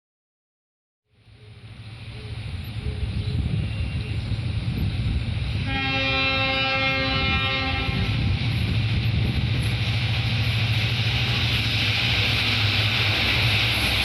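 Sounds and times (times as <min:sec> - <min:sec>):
train rumbling: 0:01.1 - 0:14.0
locomotive horn blast: 0:05.6 - 0:08.2.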